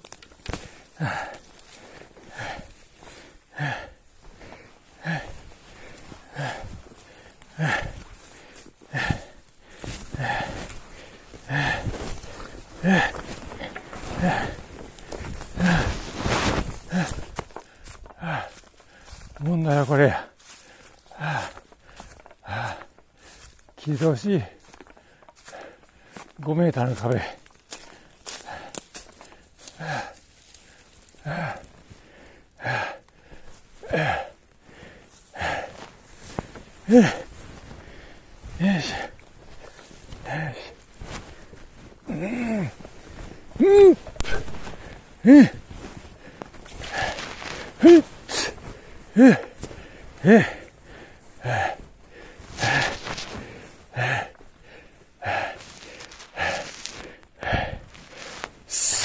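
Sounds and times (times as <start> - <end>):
man panting with grunts: 0.6 - 19.3, 20.1 - 23.5, 27.2 - 59.0
man grunting with effort: 12.8 - 13.2, 14.1 - 14.6, 36.9 - 37.3, 42.1 - 42.8, 43.6 - 45.6, 47.8 - 49.6, 50.2 - 50.6.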